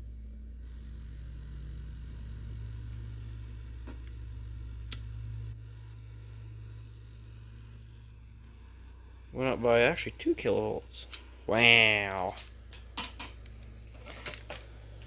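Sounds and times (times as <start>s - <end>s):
television electrical hum: 0.0s - 15.0s
faint clicks: 0.4s - 9.0s, 11.0s - 11.5s.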